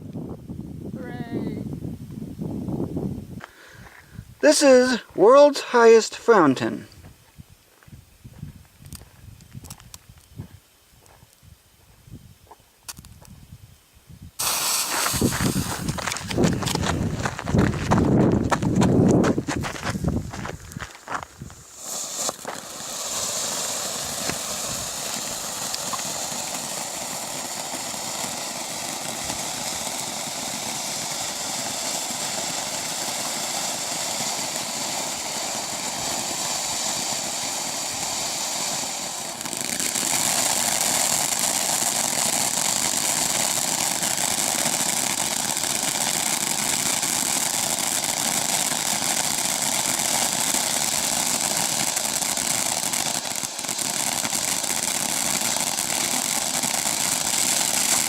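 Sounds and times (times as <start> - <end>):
ground fountain firework hissing: 3.3 - 6.8, 14.3 - 17.5, 18.4 - 58.0.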